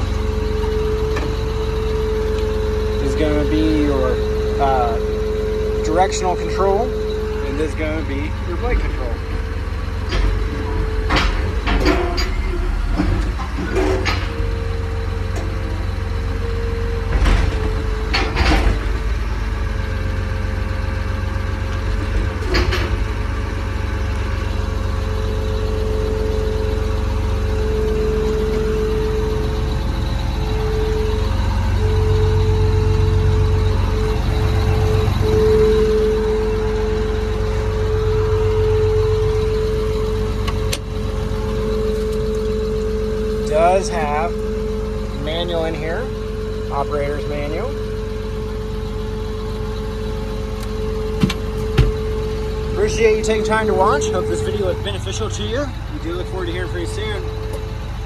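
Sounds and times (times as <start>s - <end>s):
diesel engine drone: 0.0s - 58.0s
steady whine: 0.0s - 58.0s
sharp knocks and clicks: 50.6s - 52.0s.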